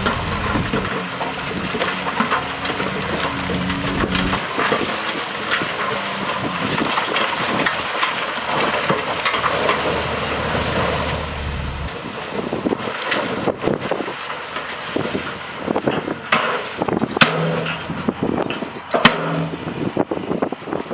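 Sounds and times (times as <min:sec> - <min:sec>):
low hum: 0:00.0 - 0:01.0, 0:01.6 - 0:04.5, 0:09.7 - 0:12.1
diesel engine running: 0:00.0 - 0:12.9
crackle of soil and stones: 0:00.0 - 0:19.9.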